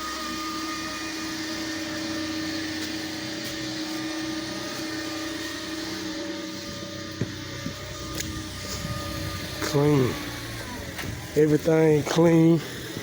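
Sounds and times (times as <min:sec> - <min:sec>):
pressure washer engine droning: 0:00.0 - 0:13.0.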